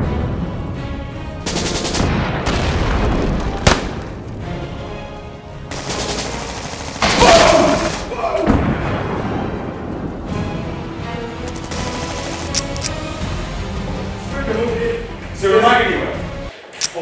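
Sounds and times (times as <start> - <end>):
background music: 0.0 - 17.0
rapid-fire gunshots: 1.4 - 2.5, 5.7 - 8.0, 11.4 - 13.1.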